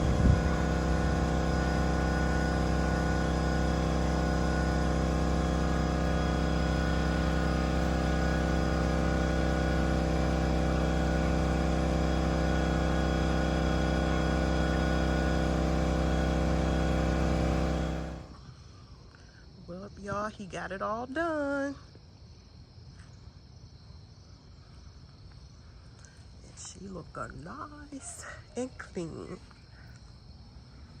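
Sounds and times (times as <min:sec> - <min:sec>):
air compressor motor humming: 0:00.0 - 0:18.6.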